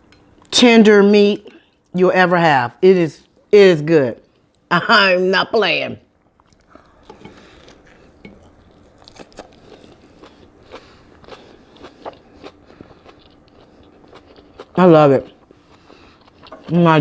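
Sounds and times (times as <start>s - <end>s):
person chewing food: 6.2s - 16.8s.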